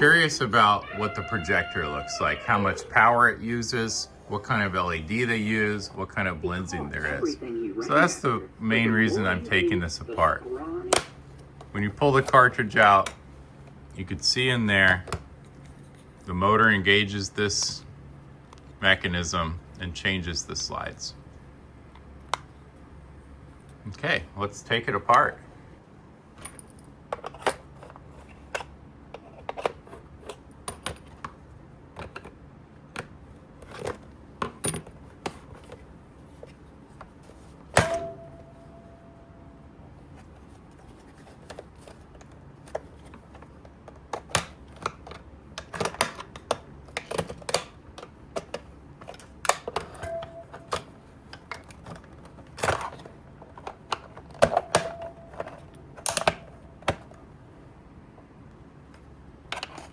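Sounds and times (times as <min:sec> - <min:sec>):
short ringing tone: 0:37.8 - 0:39.7, 0:50.1 - 0:50.8.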